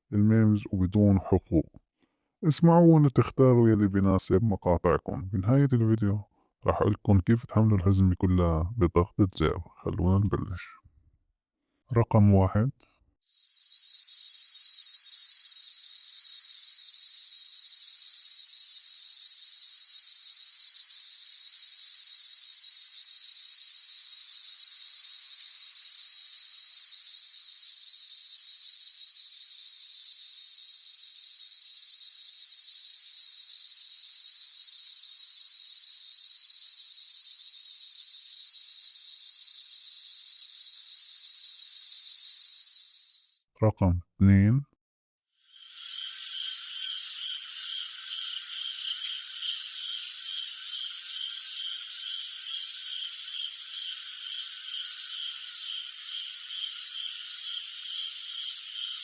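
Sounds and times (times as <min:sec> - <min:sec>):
crickets chirping: 0:13.2 - 0:43.5, 0:45.4 - 0:59.0.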